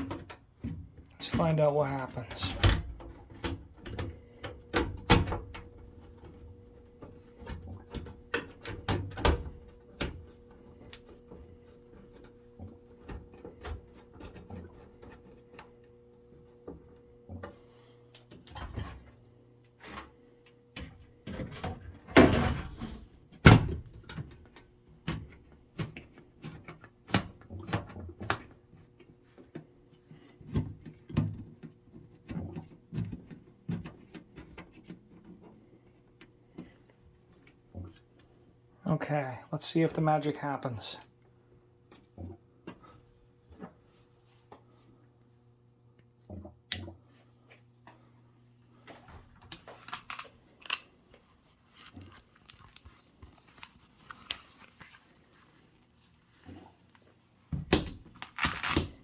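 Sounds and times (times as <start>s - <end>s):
furnace motor humming: 0.3s - 21.3s.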